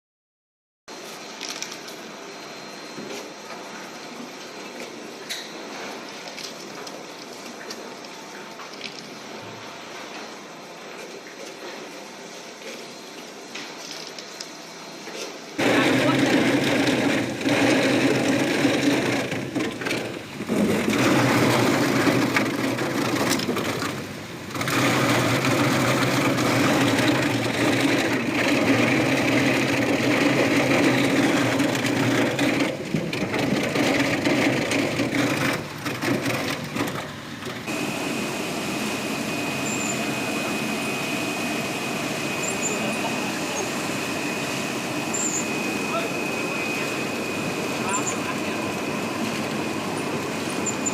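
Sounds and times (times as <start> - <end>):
machine motor hum: 15.6 - 50.9
high whine: 37.7 - 50.9.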